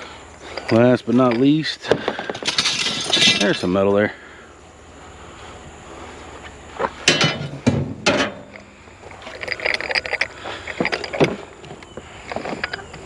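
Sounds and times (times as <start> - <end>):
scrap metal clanks and knocks: 0.5 - 3.6, 7.0 - 11.5
rattling clicks: 9.2 - 13.0.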